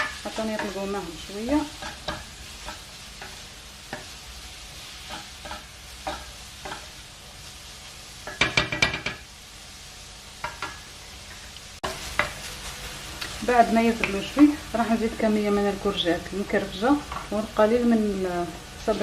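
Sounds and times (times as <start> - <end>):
utensil scraping a pan: 0.0 - 7.0
vegetables sizzling in oil: 0.0 - 19.0.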